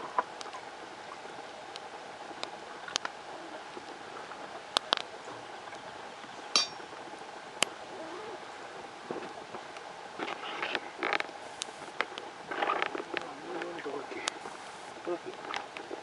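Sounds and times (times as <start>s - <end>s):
wood fire hissing and crackling: 0.3s - 16.0s.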